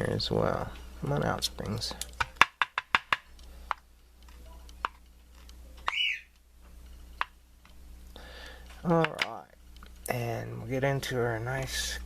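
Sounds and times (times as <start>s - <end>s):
parakeet chirp: 5.8s - 6.3s.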